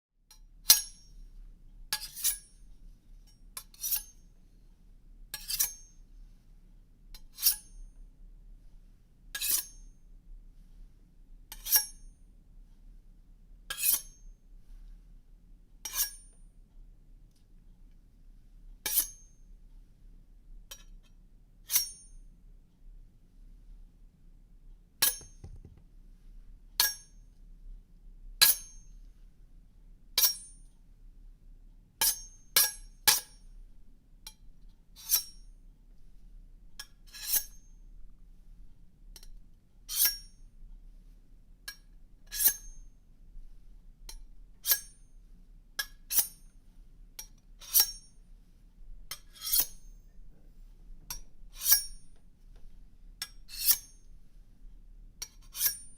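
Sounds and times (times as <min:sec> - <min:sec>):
knife blade scraping metal: 0:00.7 - 0:01.1, 0:02.0 - 0:02.6, 0:03.6 - 0:04.2, 0:05.4 - 0:05.9, 0:07.2 - 0:07.8, 0:09.4 - 0:09.8, 0:11.5 - 0:12.1, 0:13.7 - 0:14.2, 0:15.9 - 0:16.3, 0:18.9 - 0:19.3, 0:21.7 - 0:22.2, 0:25.0 - 0:25.6, 0:28.4 - 0:28.8, 0:30.2 - 0:30.6, 0:32.0 - 0:33.4, 0:35.0 - 0:35.5, 0:36.8 - 0:37.7, 0:39.9 - 0:40.4, 0:41.7 - 0:42.9, 0:44.1 - 0:45.0, 0:45.8 - 0:46.5, 0:47.2 - 0:48.2, 0:49.1 - 0:50.2, 0:51.1 - 0:52.2, 0:53.2 - 0:54.1, 0:55.2 - 0:55.9.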